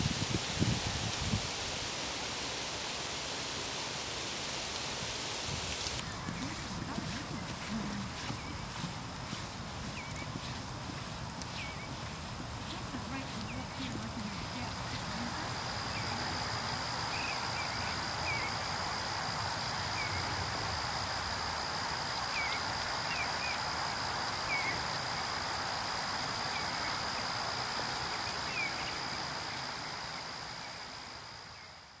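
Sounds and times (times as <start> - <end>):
outdoor hiss: 0.0 - 32.0
bird chirping: 6.0 - 15.2.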